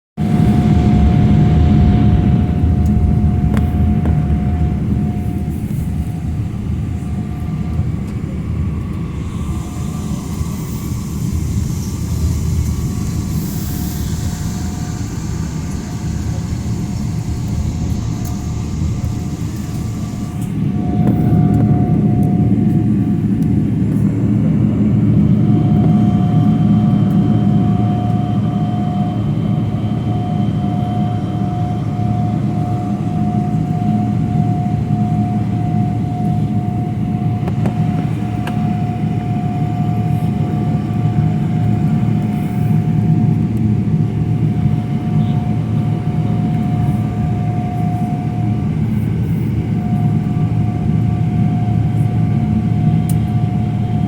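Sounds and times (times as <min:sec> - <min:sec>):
jet engine whine: 0:00.2 - 0:54.0
jet engines rumbling: 0:00.2 - 0:54.0.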